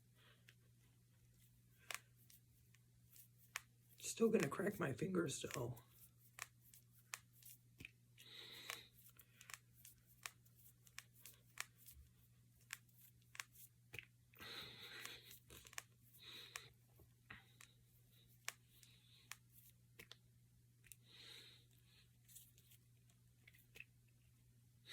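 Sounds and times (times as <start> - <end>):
knuckles cracking: 5.5 - 12.0, 12.6 - 20.2.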